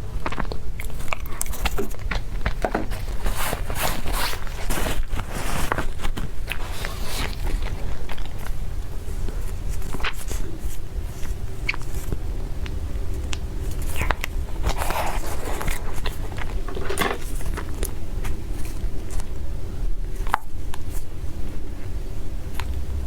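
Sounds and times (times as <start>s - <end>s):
person chewing food: 0.0s - 19.4s
steady low hum: 0.0s - 23.0s.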